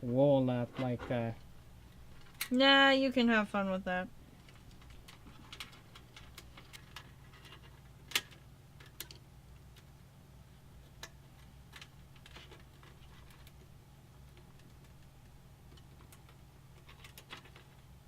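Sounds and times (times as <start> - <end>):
faint low hum: 0.0 - 18.0
hands clicking and tapping cable: 4.4 - 9.9, 10.8 - 17.8.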